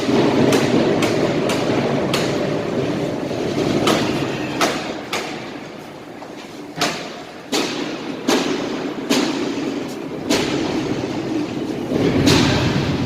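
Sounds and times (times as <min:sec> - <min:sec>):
sharp metallic knocks and clanks: 0:00.0 - 0:05.8, 0:06.7 - 0:13.0
industrial machinery rumble: 0:07.0 - 0:13.0.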